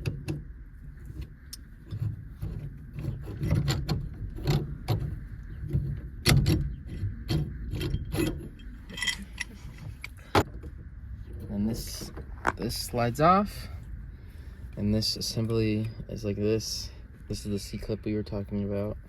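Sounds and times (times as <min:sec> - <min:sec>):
metal clicks and clinks: 0:07.8 - 0:10.2.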